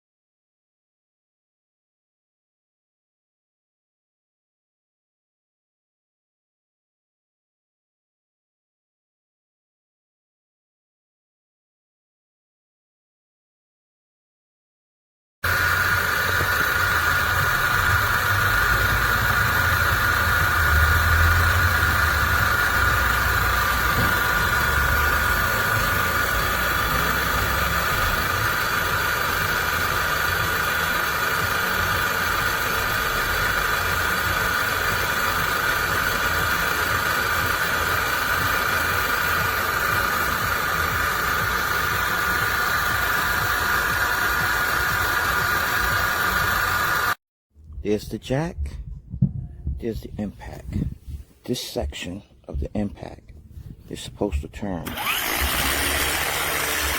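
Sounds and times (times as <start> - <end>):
motor whining: 15.4 - 47.2, 54.8 - 56.9
low rumble: 47.6 - 51.4.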